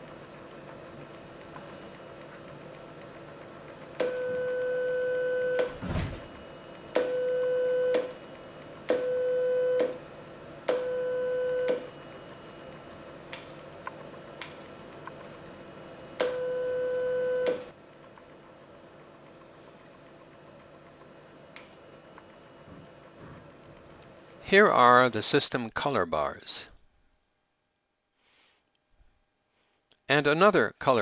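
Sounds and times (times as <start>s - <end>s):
low thump: 5.6s - 6.4s
mid-pitched test beeps: 14.5s - 17.4s.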